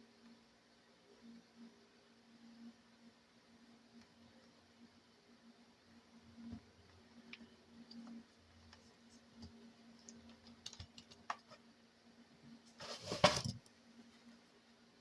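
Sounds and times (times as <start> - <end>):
plastic clicks and scraping: 9.4 - 11.6.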